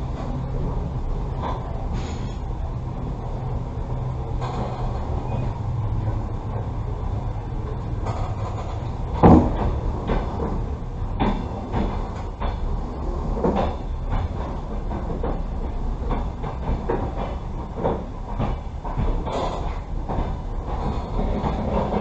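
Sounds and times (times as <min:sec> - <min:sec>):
train carriage rumbling: 0:00.0 - 0:22.0
heavy clunks and knocks: 0:08.0 - 0:12.6.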